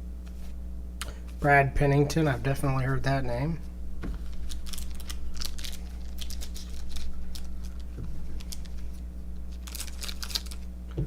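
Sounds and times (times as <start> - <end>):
low electrical hum: 0.0 - 11.0
trading cards flipping: 4.0 - 10.7.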